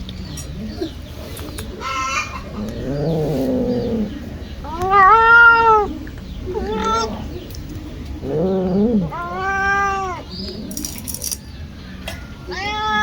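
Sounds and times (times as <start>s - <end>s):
cat meowing: 4.6s - 7.3s, 8.2s - 10.3s, 12.5s - 13.0s.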